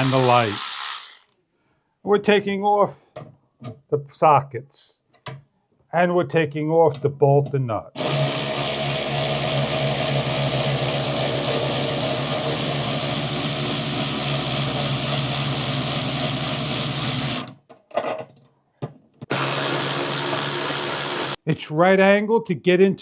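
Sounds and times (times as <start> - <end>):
electric ratchet motor running: 0.0 - 1.4, 8.0 - 17.5, 19.3 - 21.4.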